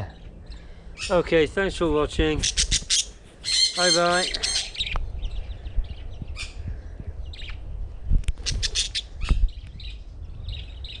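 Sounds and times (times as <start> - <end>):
budgies chirping and chattering: 0.2 - 6.6.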